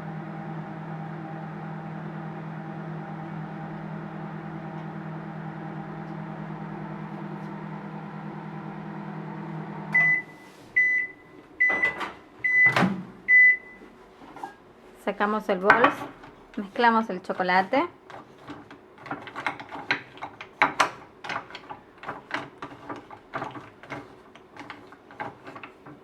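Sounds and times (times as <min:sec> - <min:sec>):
microwave oven humming: 0:00.0 - 0:26.0
microwave beeps: 0:09.7 - 0:13.9.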